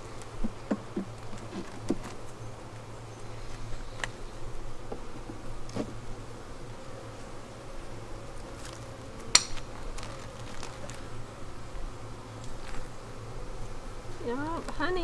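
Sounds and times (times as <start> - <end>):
honeybees buzzing: 0.0 - 15.0
hive frames clicking: 0.1 - 2.9, 3.9 - 4.2, 4.8 - 13.4.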